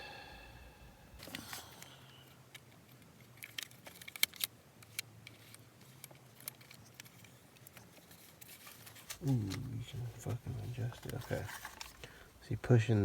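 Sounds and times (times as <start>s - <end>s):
light clicks and rattles: 2.5s - 12.1s.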